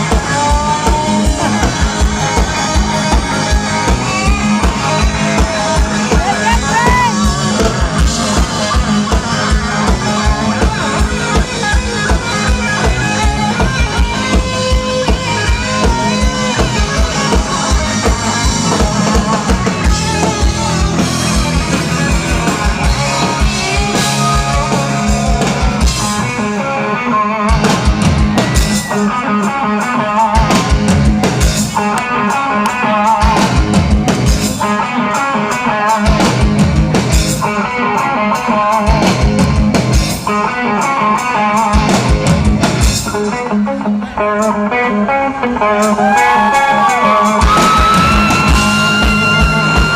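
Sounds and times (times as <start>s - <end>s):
bass drum beat: 0.0s - 26.3s, 27.6s - 28.9s, 33.1s - 34.6s, 36.0s - 37.5s, 38.9s - 40.3s, 41.6s - 43.1s, 47.4s - 49.9s
electric guitar: 0.0s - 49.9s
live rock band playing: 0.0s - 49.9s.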